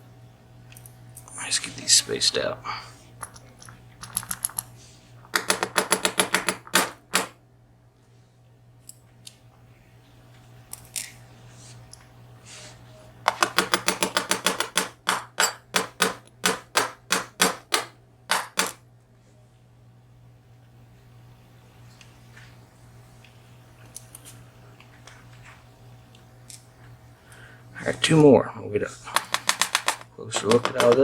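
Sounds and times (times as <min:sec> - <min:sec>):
lock parts clicking: 0:13.3 - 0:18.8.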